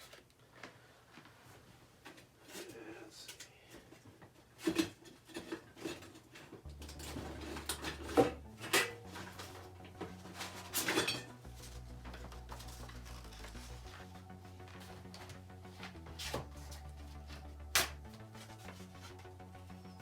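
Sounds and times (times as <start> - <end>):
low steady hum: 6.6 - 20.0.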